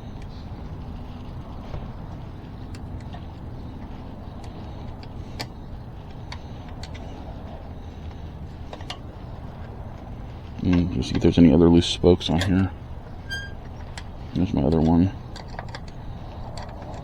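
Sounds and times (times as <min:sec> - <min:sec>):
steady low rumble: 0:00.0 - 0:17.0
metal parts clicking: 0:14.7 - 0:17.0.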